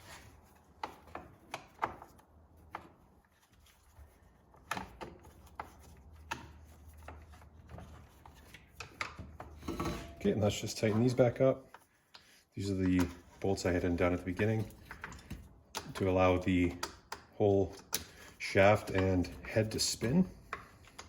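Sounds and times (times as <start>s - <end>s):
light clicks and knocks of parts: 0.0s - 9.6s, 10.2s - 21.0s.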